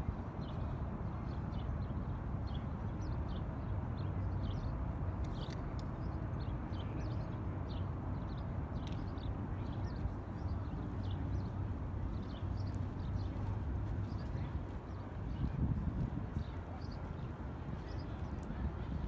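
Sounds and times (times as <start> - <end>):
traffic rumble: 0.0 - 19.0
small birds chirping: 4.0 - 19.0.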